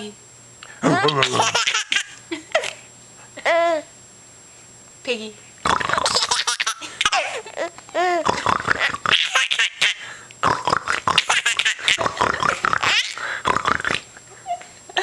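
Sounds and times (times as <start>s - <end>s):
person imitating pig oinks: 0.8s - 1.6s, 5.6s - 6.3s, 8.0s - 9.4s, 10.4s - 14.1s
baby laughing: 0.9s - 2.8s, 6.0s - 10.0s, 11.2s - 13.2s.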